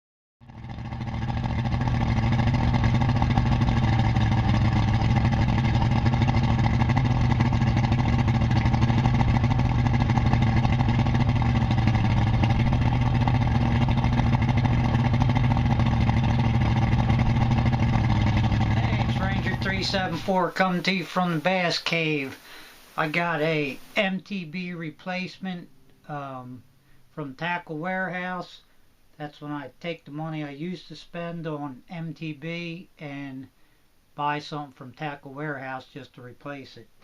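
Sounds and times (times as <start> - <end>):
outboard boat engine running: 0.4 - 20.4.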